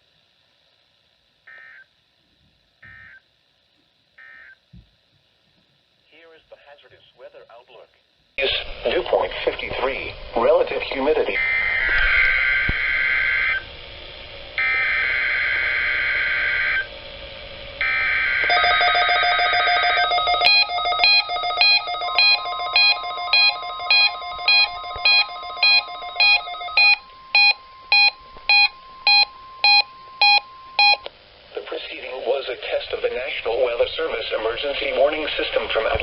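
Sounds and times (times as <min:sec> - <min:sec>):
steady warning alarm tone: 0:01.5 - 0:01.9, 0:02.8 - 0:03.2, 0:04.2 - 0:04.6, 0:10.4 - 0:13.8, 0:14.4 - 0:17.0, 0:17.6 - 0:31.1
radio alert beeping: 0:02.8 - 0:03.2, 0:18.5 - 0:31.1
warbling digital header bursts: 0:18.8 - 0:31.0.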